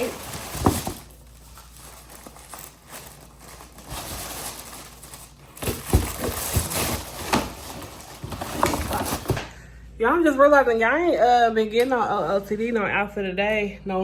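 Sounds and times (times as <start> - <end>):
rustling and handling: 0.0 - 9.6.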